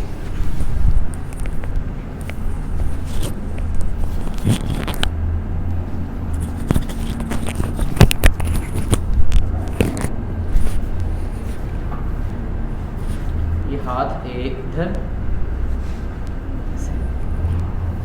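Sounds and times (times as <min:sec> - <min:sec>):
rustling: 0:00.0 - 0:05.2, 0:05.8 - 0:13.6
steady low hum: 0:00.0 - 0:18.0.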